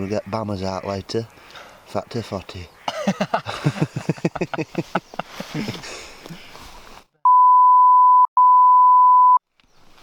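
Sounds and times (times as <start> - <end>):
men talking: 0.0 - 6.1
censor bleep tone: 7.2 - 9.4.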